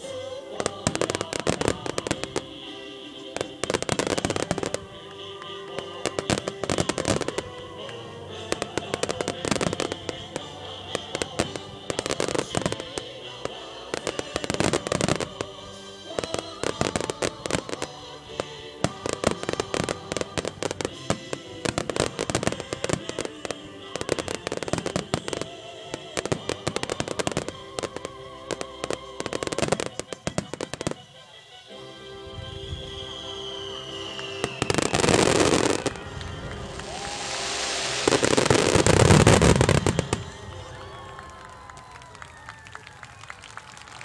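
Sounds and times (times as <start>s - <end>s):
fireworks bursting and crackling: 0.0s - 31.4s, 32.4s - 43.9s
music playing: 0.0s - 44.0s.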